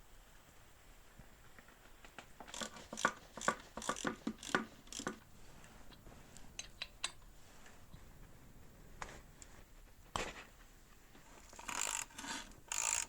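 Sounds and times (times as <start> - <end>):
tool scraping on metal: 11.3 - 13.0.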